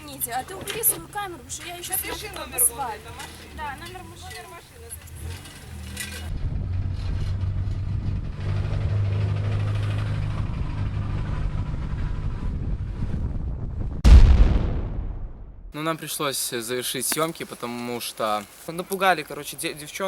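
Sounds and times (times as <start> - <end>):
car engine low hum: 0.1 - 14.0.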